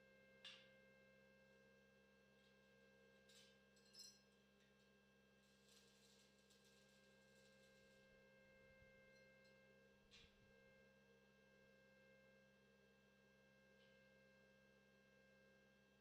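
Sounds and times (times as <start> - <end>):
faint steady hum: 5.4 - 16.0.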